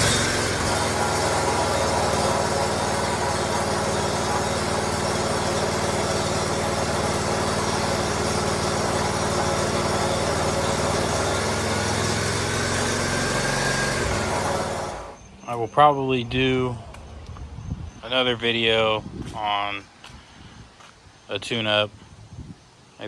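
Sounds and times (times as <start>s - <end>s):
mower engine running steadily: 0.0s - 15.2s.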